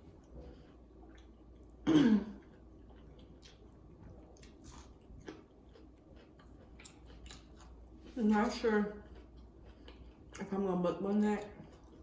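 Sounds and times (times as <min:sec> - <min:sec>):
person chewing: 0:00.0 - 0:01.8, 0:02.4 - 0:08.2, 0:09.0 - 0:10.4
person clearing throat: 0:01.8 - 0:02.4.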